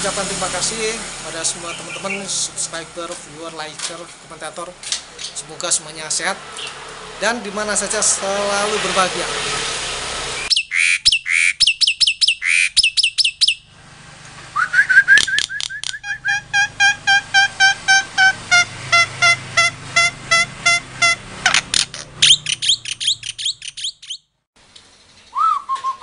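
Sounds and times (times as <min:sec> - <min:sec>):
songbird singing: 0:01.4 - 0:04.0, 0:06.5 - 0:06.9, 0:10.4 - 0:13.7, 0:14.6 - 0:26.0.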